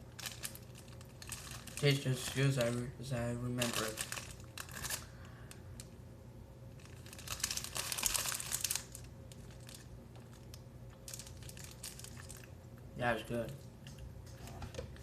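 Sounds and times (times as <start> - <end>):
plastic wrapper crinkling: 0.1 - 6.0, 6.7 - 12.6.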